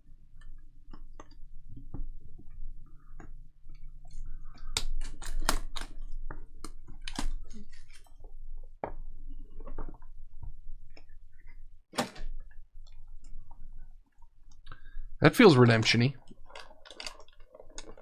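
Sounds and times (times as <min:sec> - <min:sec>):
faint steady hum: 0:00.0 - 0:18.0
plastic and cardboard crackling: 0:04.7 - 0:08.1, 0:16.2 - 0:18.0.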